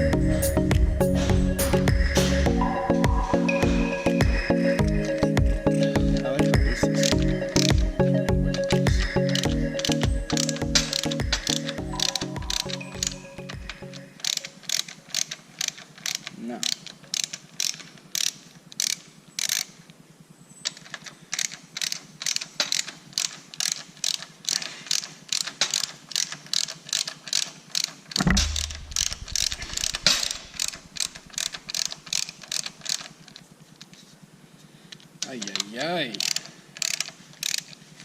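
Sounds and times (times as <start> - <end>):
ratchet wrench clicking: 6.2 - 7.9, 8.5 - 20.0, 20.6 - 33.9, 34.9 - 38.0
heavy thump: 28.2 - 29.4.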